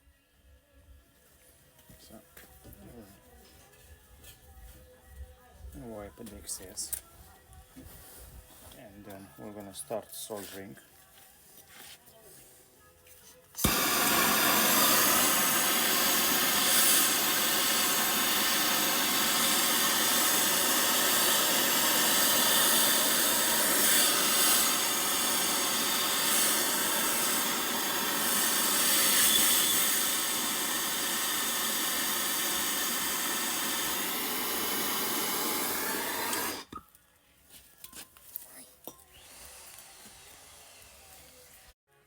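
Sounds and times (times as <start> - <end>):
gas torch hissing: 13.6 - 36.8.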